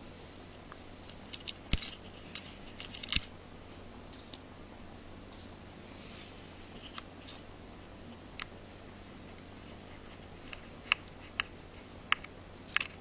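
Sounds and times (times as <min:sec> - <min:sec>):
screwdriver clicking on tiny screws: 0:01.1 - 0:03.3, 0:12.1 - 0:13.0.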